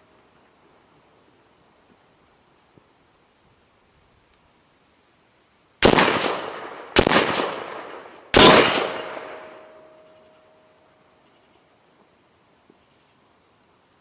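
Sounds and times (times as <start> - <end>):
rifle shots echoing: 5.8 - 10.0
faint steady ring: 9.0 - 11.7.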